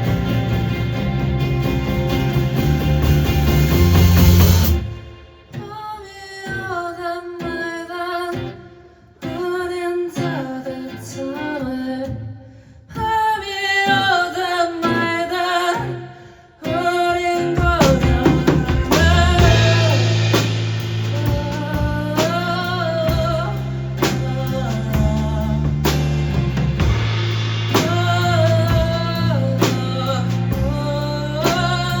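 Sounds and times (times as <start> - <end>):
fuller band accompaniment: 0.0 - 5.6, 17.4 - 32.0
acoustic guitar: 0.0 - 32.0
person singing: 5.5 - 12.3, 12.9 - 27.0, 27.7 - 32.0.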